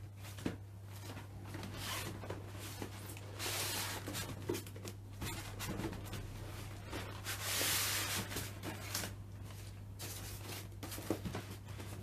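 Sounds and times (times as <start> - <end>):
cardboard packaging rustling: 1.0 - 12.0.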